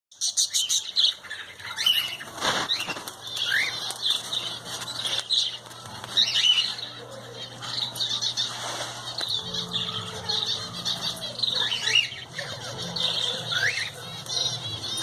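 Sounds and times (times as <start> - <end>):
small birds chirping and twittering: 0.1 - 15.0
wings fluttering: 1.8 - 6.4.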